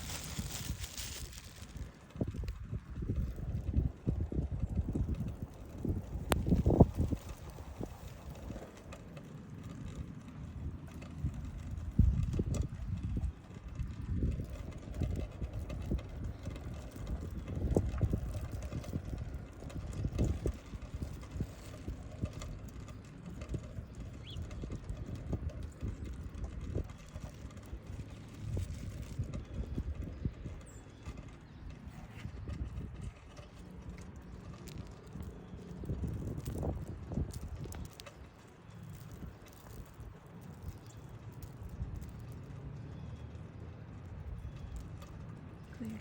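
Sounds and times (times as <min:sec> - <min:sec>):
wind buffeting microphone: 0:00.0 - 0:46.0.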